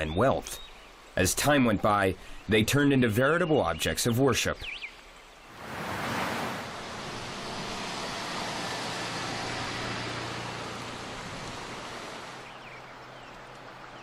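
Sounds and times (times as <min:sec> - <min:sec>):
steady rushing hiss: 0:05.5 - 0:12.5.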